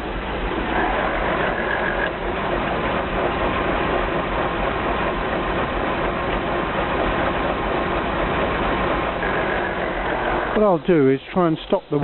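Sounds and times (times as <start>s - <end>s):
engine running: 0.0s - 12.0s
gearbox grinding: 0.6s - 2.2s, 9.1s - 10.6s.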